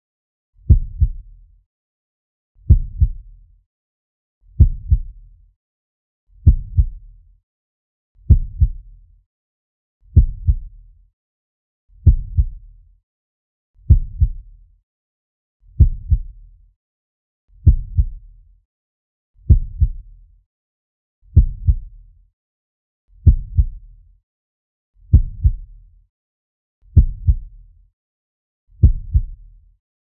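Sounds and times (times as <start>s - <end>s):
heartbeat thumps: 0.7s - 1.2s, 2.7s - 3.2s, 4.6s - 5.1s, 6.4s - 7.0s, 8.3s - 8.8s, 10.2s - 10.6s, 12.0s - 12.6s, 13.9s - 14.4s, 15.8s - 16.3s, 17.6s - 18.2s, 19.5s - 20.0s, 21.4s - 21.8s, 23.2s - 23.8s, 25.1s - 25.7s, 27.0s - 27.4s, 28.8s - 29.4s.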